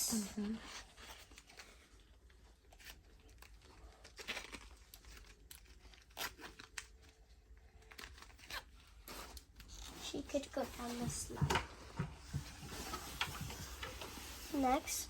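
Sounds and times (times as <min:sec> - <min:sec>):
paper crinkling: 0:00.7 - 0:11.4.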